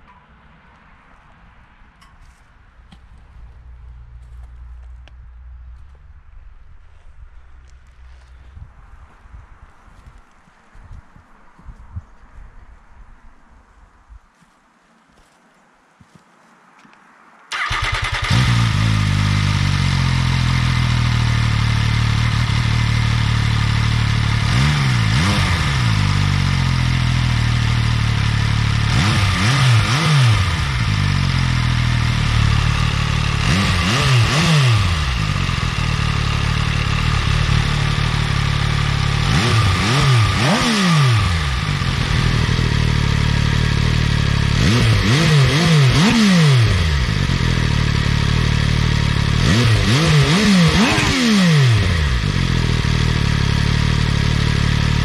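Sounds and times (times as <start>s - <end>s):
motorcycle engine idling and revving: 17.5s - 55.0s.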